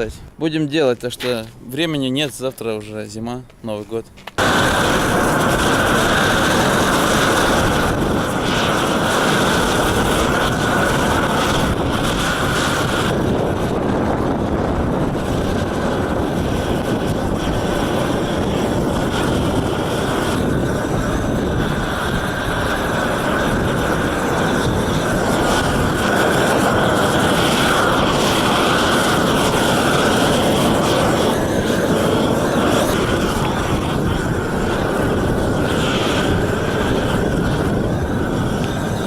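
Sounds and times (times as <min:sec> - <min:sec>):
roofing torch burning: 0:00.0 - 0:39.0.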